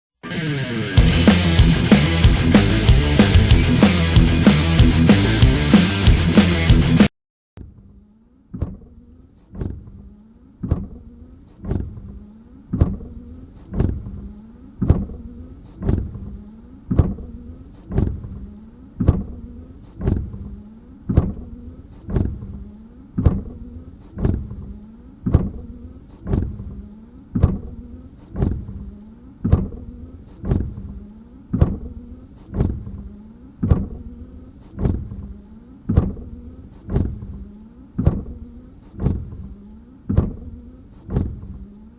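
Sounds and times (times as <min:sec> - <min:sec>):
low motor hum: 0:01.0 - 0:07.1.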